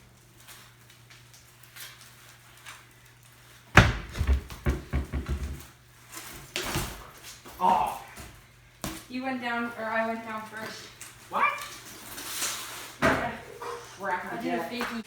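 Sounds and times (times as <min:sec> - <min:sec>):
low thumps: 0:03.8 - 0:05.6.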